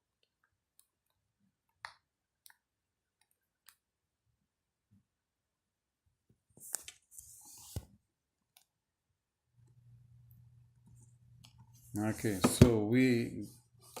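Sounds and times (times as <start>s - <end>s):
low steady hum: 9.4s - 14.0s.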